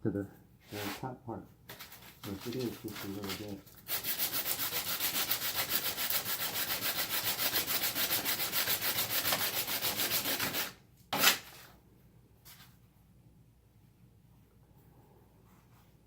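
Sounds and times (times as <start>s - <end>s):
sanding on sandpaper: 0.7s - 1.0s, 2.3s - 10.8s.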